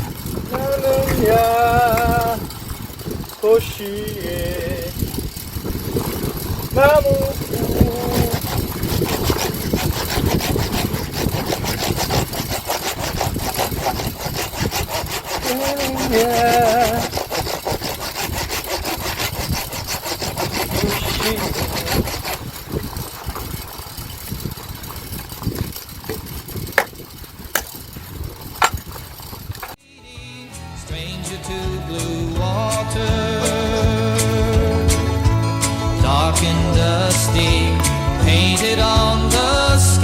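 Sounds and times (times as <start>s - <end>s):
saw cutting wood: 0.0s - 27.8s.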